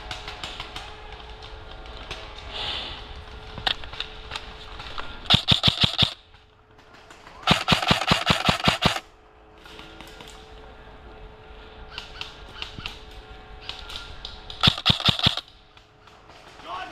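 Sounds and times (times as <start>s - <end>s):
airsoft rifle rapid bursts: 5.3s - 6.2s, 7.3s - 9.0s, 14.6s - 15.5s.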